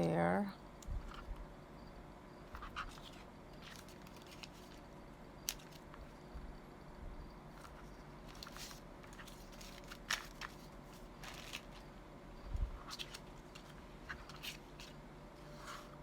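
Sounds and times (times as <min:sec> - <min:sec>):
paper rustling: 0:02.5 - 0:04.9, 0:05.5 - 0:06.2, 0:07.5 - 0:12.0, 0:12.6 - 0:16.0.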